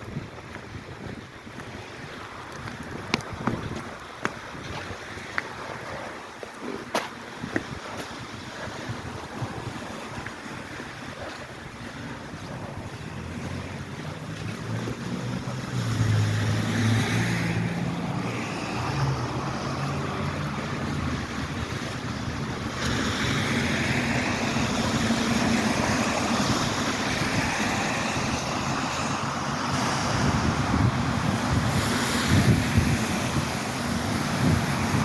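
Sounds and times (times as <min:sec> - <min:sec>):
traffic on wet road: 0:00.0 - 0:35.0
wind noise on microphone: 0:00.0 - 0:35.0
steady rain: 0:08.2 - 0:35.0.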